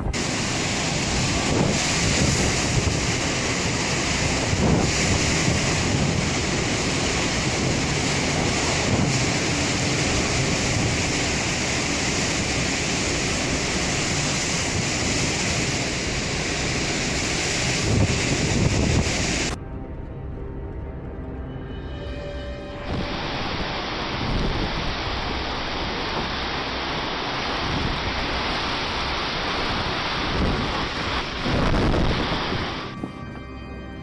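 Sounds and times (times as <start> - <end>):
wind buffeting microphone: 0.0 - 19.6, 22.9 - 33.2
storm wind: 0.0 - 33.2
surf: 22.9 - 32.9.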